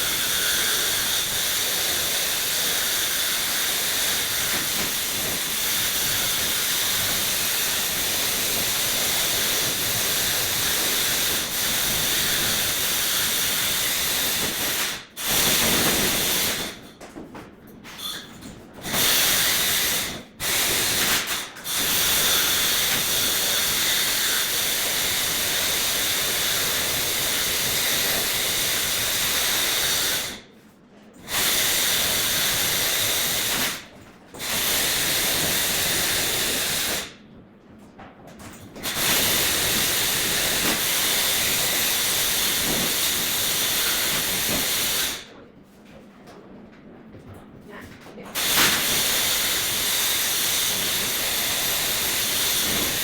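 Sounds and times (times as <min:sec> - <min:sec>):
pressurised gas hissing: 0:38.8 - 0:45.3, 0:48.4 - 0:53.0.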